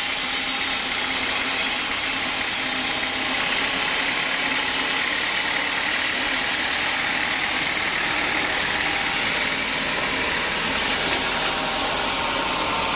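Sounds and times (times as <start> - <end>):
sawmill machinery running: 0.0 - 12.9.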